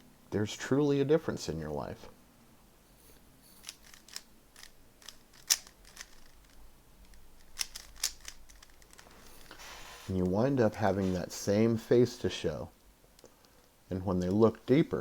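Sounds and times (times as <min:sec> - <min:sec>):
puzzle cube plastic clicks: 0:03.6 - 0:09.1.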